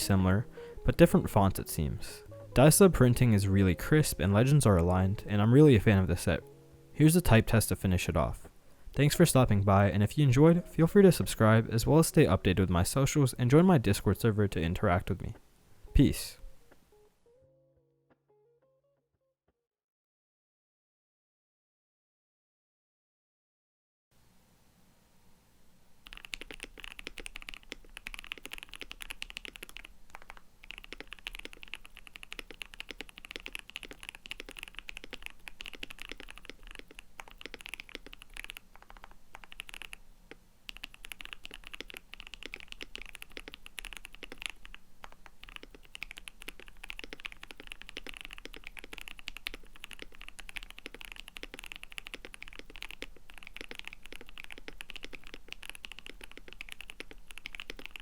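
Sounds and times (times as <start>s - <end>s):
fast typing on mechanical keyboard: 26.0s - 40.0s, 40.7s - 58.0s.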